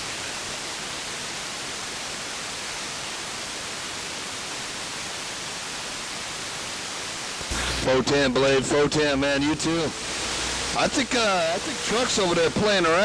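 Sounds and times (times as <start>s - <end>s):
radio static hiss: 7.3s - 13.0s.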